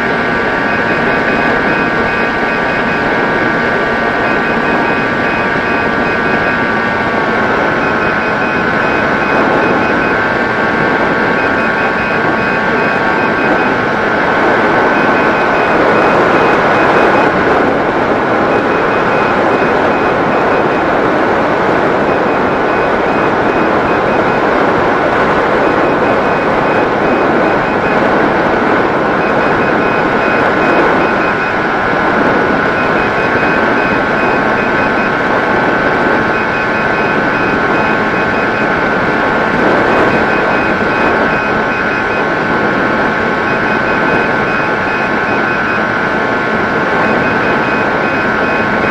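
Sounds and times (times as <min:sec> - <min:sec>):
electric motor and propeller whine: 0:00.0 - 0:48.9
faint high beep: 0:00.5 - 0:10.5, 0:11.3 - 0:13.8, 0:14.8 - 0:17.4, 0:18.5 - 0:21.0, 0:25.6 - 0:28.1, 0:29.2 - 0:31.6, 0:32.6 - 0:35.2, 0:36.2 - 0:38.7, 0:43.4 - 0:45.8.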